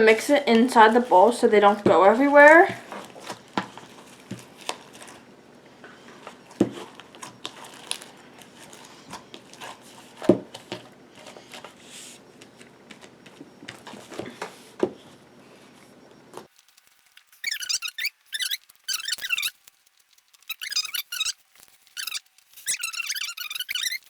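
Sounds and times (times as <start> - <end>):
slime clicking and crackling: 2.8 - 5.2.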